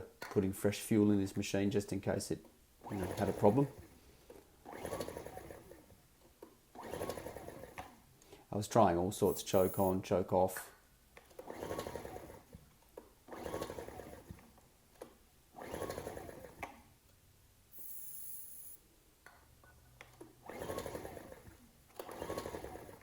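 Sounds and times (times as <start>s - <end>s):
recoil starter pulls cranking engine: 2.8s - 3.9s, 4.7s - 5.8s, 9.2s - 9.9s, 11.4s - 12.5s, 13.3s - 14.4s, 15.6s - 16.6s, 20.5s - 23.0s.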